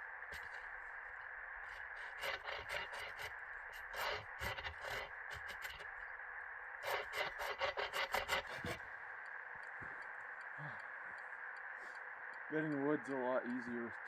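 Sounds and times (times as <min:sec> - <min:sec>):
hand saw cutting wood: 0:02.0 - 0:05.9, 0:06.8 - 0:08.8.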